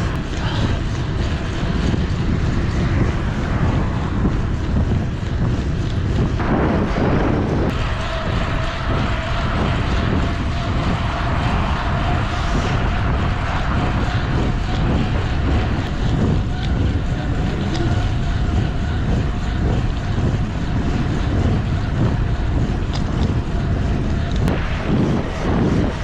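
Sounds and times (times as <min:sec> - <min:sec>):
thin steady whine: 0:00.0 - 0:26.0
wind buffeting microphone: 0:00.0 - 0:26.0.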